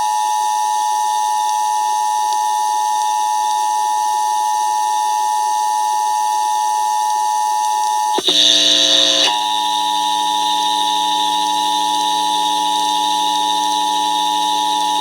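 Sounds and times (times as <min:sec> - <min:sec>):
two-tone alarm: 0:08.1 - 0:15.0.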